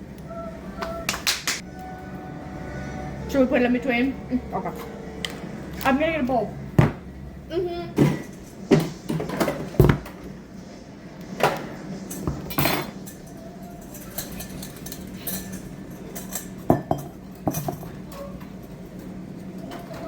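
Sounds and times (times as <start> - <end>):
low hum: 1.6 - 8.7
bowl and utensils clattering: 11.5 - 20.0.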